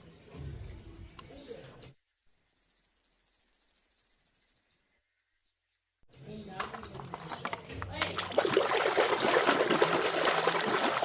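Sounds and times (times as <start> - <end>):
faint chirps: 2.3 - 5.1
high-pitched pulsing trill: 2.4 - 5.0.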